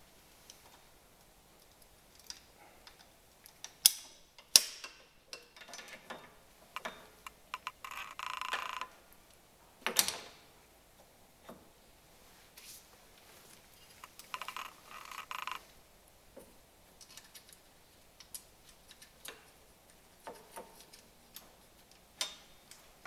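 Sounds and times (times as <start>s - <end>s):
buzzing rattle: 6.7s - 8.9s, 14.0s - 15.7s.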